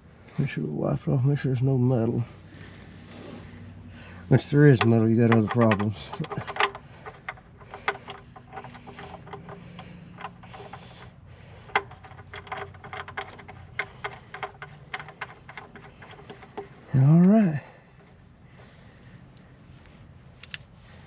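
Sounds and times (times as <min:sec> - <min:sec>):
hand tools clicking and tapping: 0:04.4 - 0:17.0.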